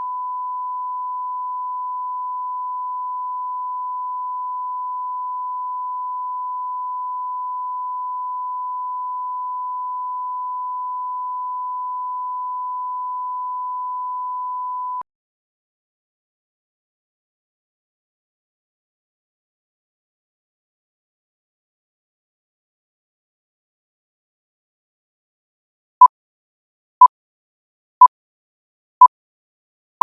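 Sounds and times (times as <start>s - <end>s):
sine test tone: 0.0s - 15.0s.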